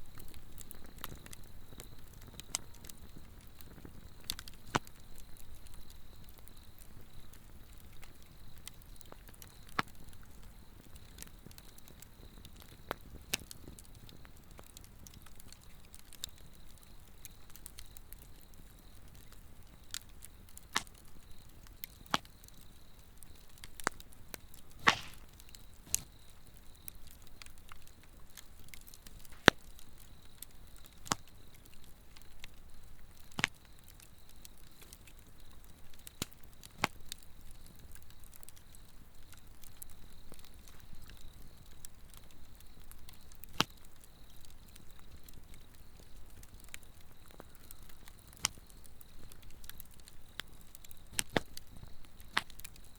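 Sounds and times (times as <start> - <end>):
wood fire crackling and popping: 0.0 - 52.9.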